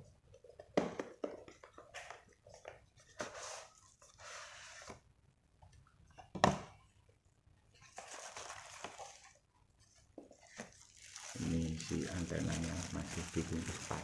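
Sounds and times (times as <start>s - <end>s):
packaging rustling and crinkling: 7.8s - 9.4s, 10.3s - 14.0s.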